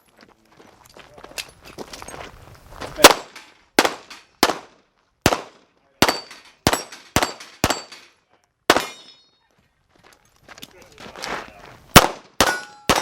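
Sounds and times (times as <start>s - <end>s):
pistol shots: 3.0s - 8.0s, 8.7s - 9.2s, 12.0s - 13.0s
metallic ring of steel target: 8.7s - 9.4s, 12.4s - 13.0s.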